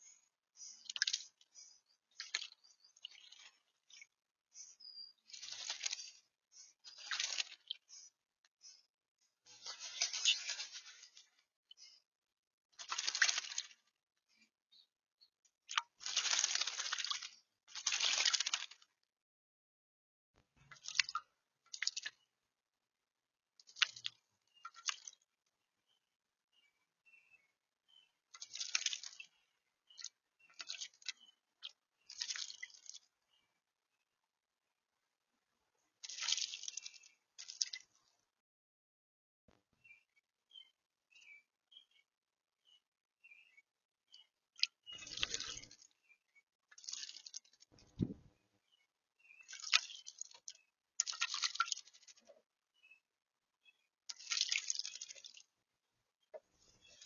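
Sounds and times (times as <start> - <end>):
bird splashing in water: 5.3 - 6.2, 6.8 - 8.0, 9.5 - 11.2, 12.8 - 13.8, 15.7 - 18.8, 20.7 - 22.2, 28.3 - 29.3, 36.0 - 37.8, 44.6 - 45.8, 46.7 - 48.2, 49.5 - 52.2, 54.1 - 55.5.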